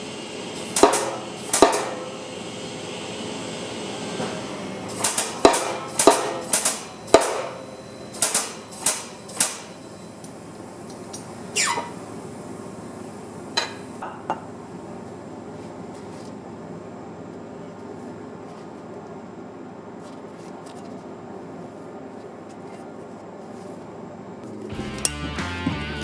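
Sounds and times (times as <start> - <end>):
hammer striking metal: 0.7 - 2.2, 5.0 - 9.8.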